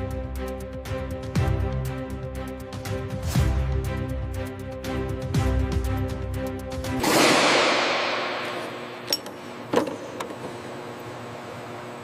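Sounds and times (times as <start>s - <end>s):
metallic clinks and knocks: 9.0s - 9.4s.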